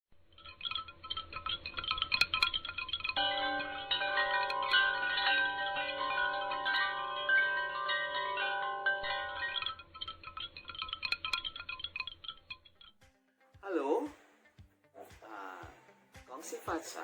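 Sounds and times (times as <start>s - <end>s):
light tinkling: 0.3s - 13.0s
chimes ringing: 0.4s - 12.9s.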